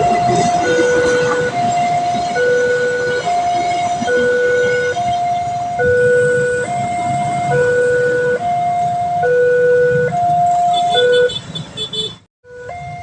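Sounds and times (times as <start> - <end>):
two-tone crossing alarm: 0.0 - 11.4, 12.4 - 13.0.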